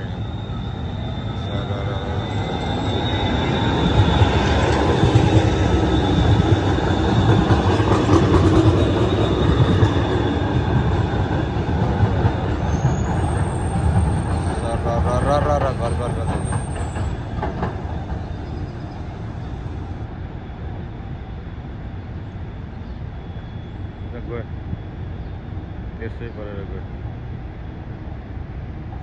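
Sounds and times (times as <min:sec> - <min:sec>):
thin high whine: 0:00.0 - 0:07.8
light-rail train rumble: 0:00.0 - 0:29.0.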